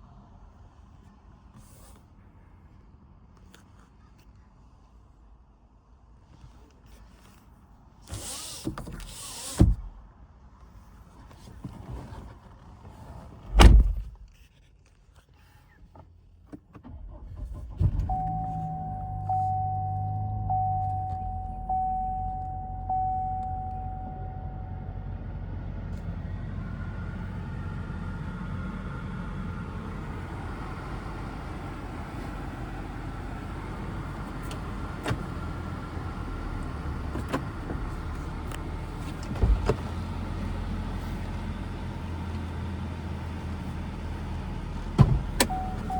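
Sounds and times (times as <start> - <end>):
car engine idling: 16.8 - 45.9
warning chime: 18.1 - 25.0.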